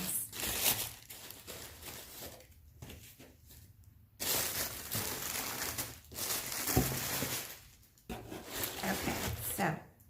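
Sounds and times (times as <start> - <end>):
paper packaging rustling: 0.0 - 9.6.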